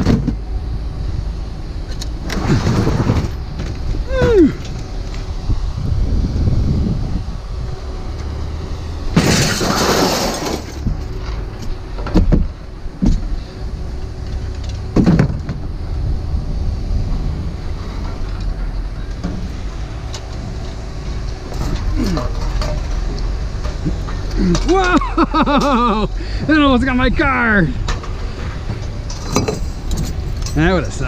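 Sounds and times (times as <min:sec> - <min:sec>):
low machinery rumble: 0:00.0 - 0:31.0
scrap metal clattering: 0:09.2 - 0:10.8, 0:21.5 - 0:24.8.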